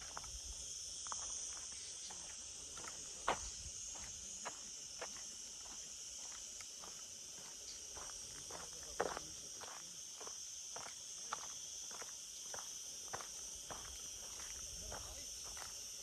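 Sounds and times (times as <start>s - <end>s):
footsteps on a path: 0.0s - 15.8s
high-pitched insect chorus: 0.0s - 16.0s.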